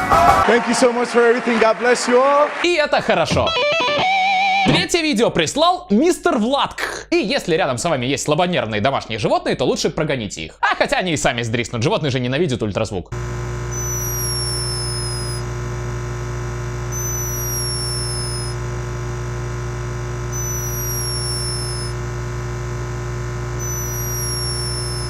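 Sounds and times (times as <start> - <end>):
high thin whistles: 13.8 - 15.4, 16.9 - 18.6, 20.3 - 22.0, 23.6 - 25.0.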